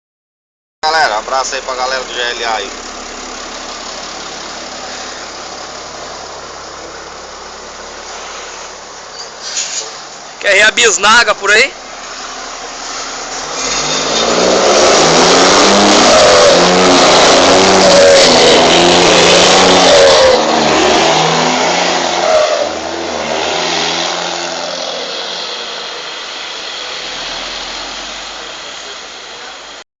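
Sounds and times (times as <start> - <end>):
truck engine revving past: 12.0 - 29.0.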